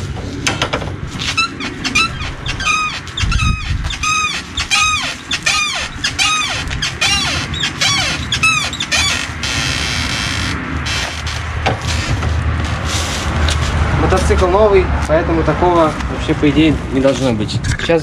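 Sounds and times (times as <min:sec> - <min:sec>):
motorbike suspension squeaking: 0:01.1 - 0:14.7.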